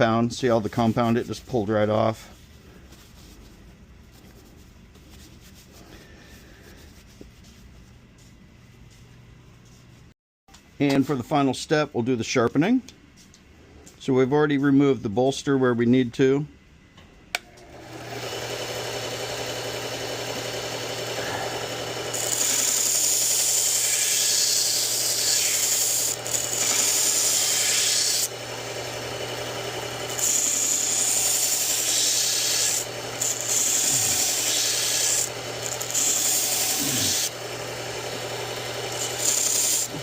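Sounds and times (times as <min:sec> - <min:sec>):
belt sharpener motor hum: 0:17.4 - 0:40.0
knife blade grinding on belt: 0:30.1 - 0:37.4, 0:38.9 - 0:40.0.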